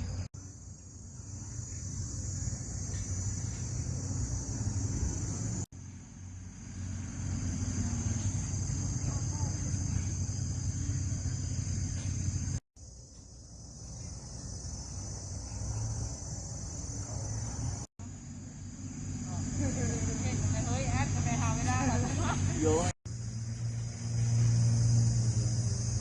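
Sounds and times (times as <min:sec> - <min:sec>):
low wind rumble: 0:00.0 - 0:12.6.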